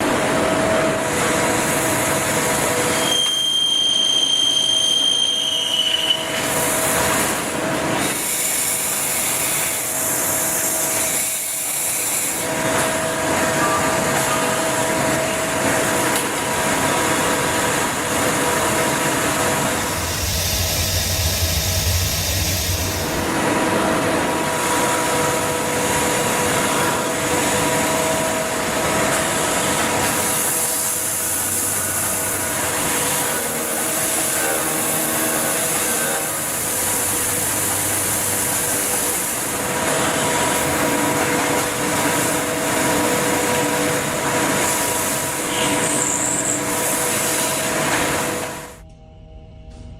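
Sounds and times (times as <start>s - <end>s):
lathe cutting hiss: 1.0s - 48.8s.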